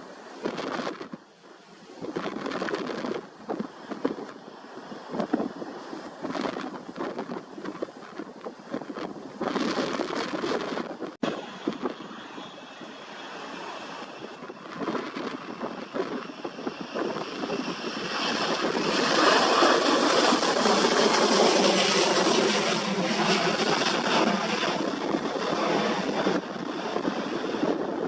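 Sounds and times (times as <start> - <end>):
aircraft engine passing: 11.2 - 28.0.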